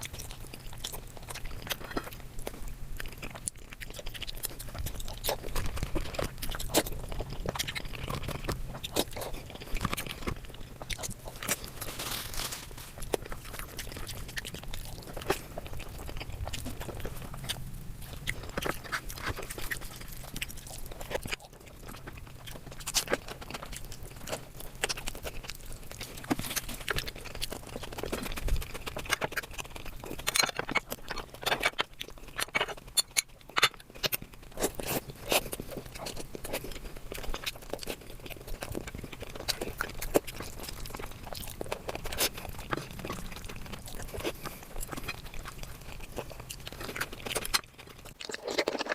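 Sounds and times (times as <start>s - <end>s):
person chewing crunchy food: 0.0s - 48.9s.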